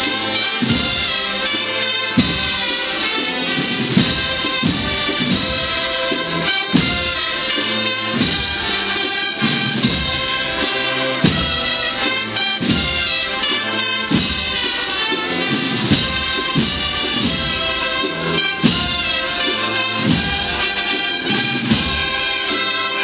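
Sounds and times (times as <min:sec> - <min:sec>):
brass band music: 0:00.0 - 0:23.0
drums beating: 0:00.0 - 0:23.0.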